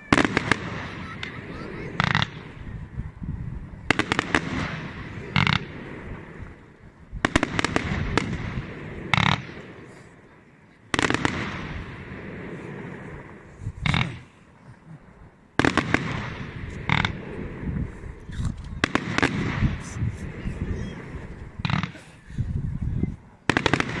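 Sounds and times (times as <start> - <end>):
firework bang: 0.0 - 3.0, 7.2 - 9.7, 18.8 - 20.3
firework cracks: 0.0 - 3.0, 3.8 - 10.1, 10.9 - 14.4, 15.6 - 17.8, 18.4 - 22.1, 23.5 - 24.0.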